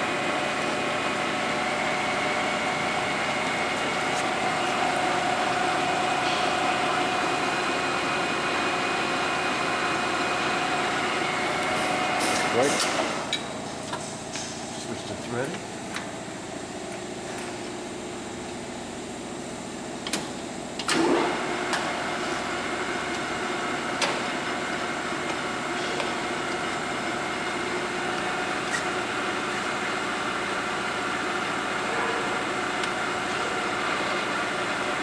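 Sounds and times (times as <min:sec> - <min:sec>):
lathe gearing humming: 0:00.0 - 0:35.0
click and sharp clunk: 0:20.0 - 0:21.9.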